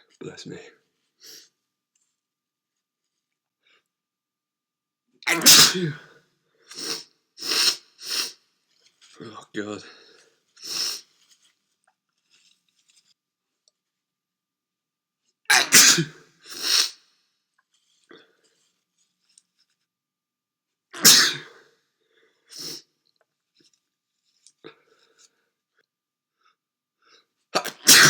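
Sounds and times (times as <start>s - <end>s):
man sneezing loudly: 5.3s - 6.1s, 15.5s - 17.0s, 21.0s - 21.6s, 27.6s - 28.0s.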